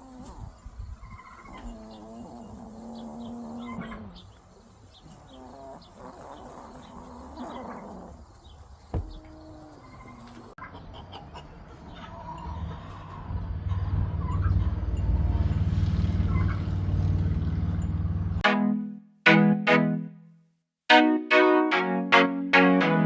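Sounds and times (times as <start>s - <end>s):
chicken snoring: 0.0s - 10.5s.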